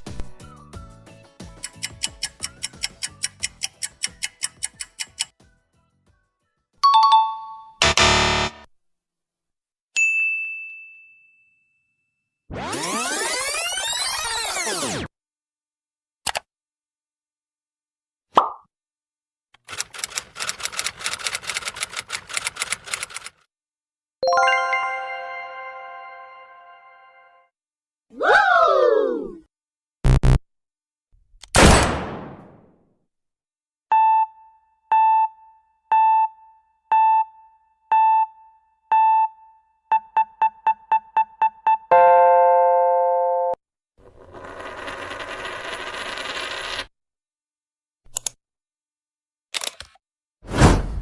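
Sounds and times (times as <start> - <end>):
ding-dong doorbell chime: 6.8 - 7.8, 10.0 - 12.0
typewriter keys clattering: 19.6 - 23.4.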